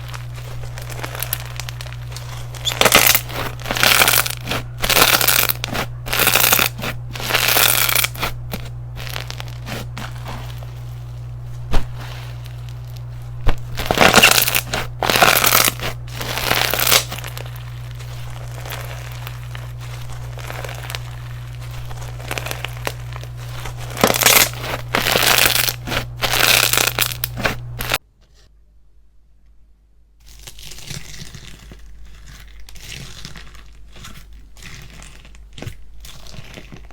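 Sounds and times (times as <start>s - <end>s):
slime crackling and popping: 0.0s - 28.0s, 30.2s - 36.9s
steady low hum: 0.0s - 28.0s.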